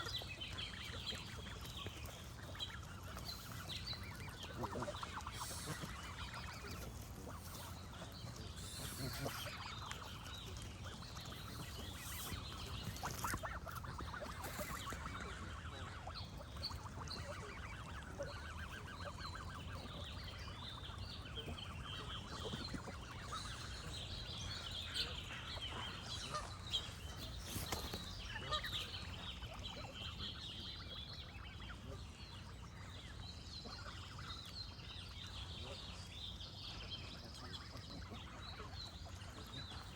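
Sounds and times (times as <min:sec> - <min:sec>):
small birds chirping: 0:00.0 - 0:39.9
geese honking: 0:01.0 - 0:29.4.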